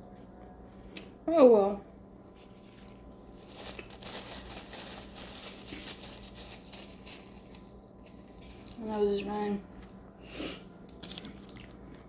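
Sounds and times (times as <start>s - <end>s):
faint hum: 0.0s - 12.0s
paper wrapper crinkling: 2.3s - 8.8s.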